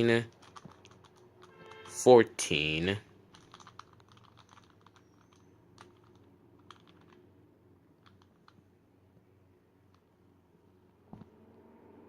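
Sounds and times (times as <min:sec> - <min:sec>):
plastic cube clicking: 0:00.0 - 0:02.0, 0:03.3 - 0:07.2, 0:08.0 - 0:08.6.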